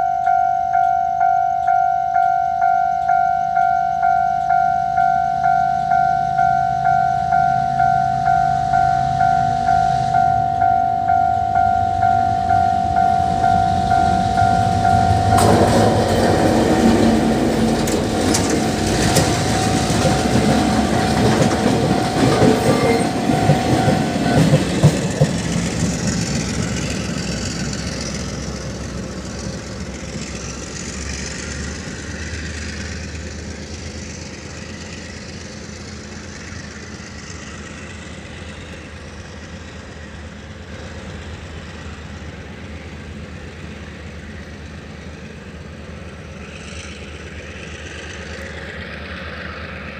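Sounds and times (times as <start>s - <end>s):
level crossing bell ringing: 0.0s - 16.3s, 17.8s - 24.6s
train rumble: 0.0s - 49.9s
train wheels clattering on rails: 12.5s - 49.9s.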